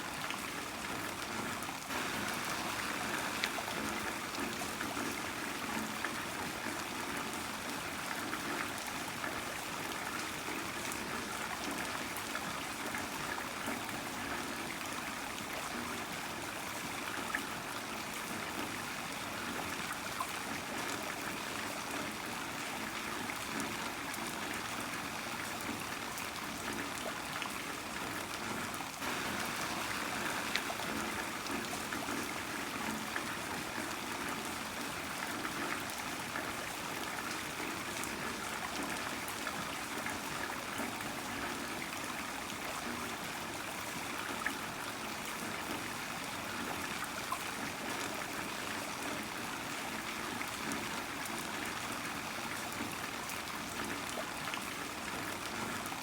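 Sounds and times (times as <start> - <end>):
heavy rain hissing: 1.9 - 4.4, 29.0 - 32.1.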